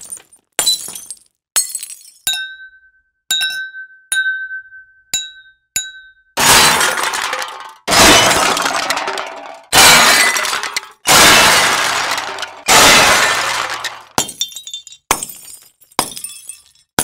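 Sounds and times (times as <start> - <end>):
glass shattering: 0.0 - 2.6, 6.4 - 17.0
sharp glass hit: 9.7 - 14.4.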